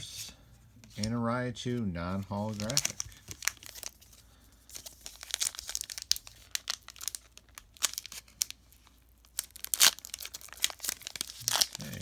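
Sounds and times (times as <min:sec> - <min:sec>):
foil wrapper crinkling: 0:02.1 - 0:12.0
foil tearing: 0:04.8 - 0:12.0.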